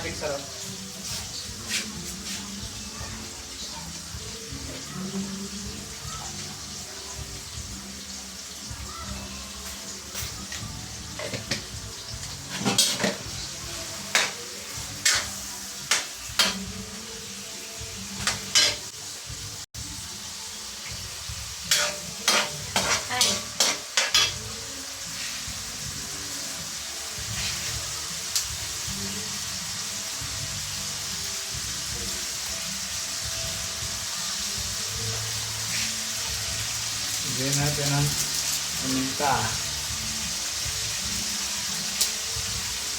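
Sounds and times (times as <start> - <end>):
food sizzling: 0.0 - 42.9
utensil scraping and clinking pan: 12.4 - 13.3, 14.0 - 16.6, 18.2 - 18.9, 21.7 - 24.5.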